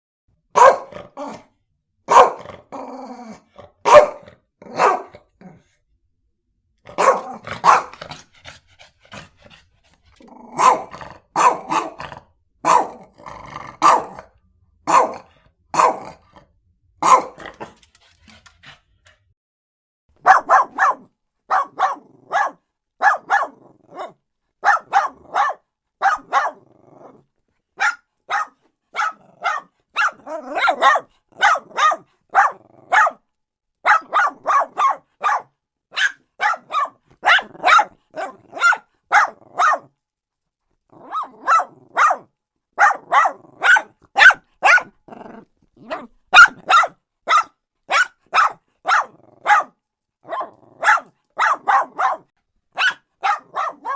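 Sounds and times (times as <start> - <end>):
small dog barking: 0.5 - 1.5, 2.1 - 2.8, 3.8 - 5.6, 6.9 - 8.2, 10.5 - 16.4, 17.0 - 17.9, 20.2 - 26.7, 27.8 - 33.2, 33.8 - 39.9, 41.0 - 45.0, 45.8 - 53.9.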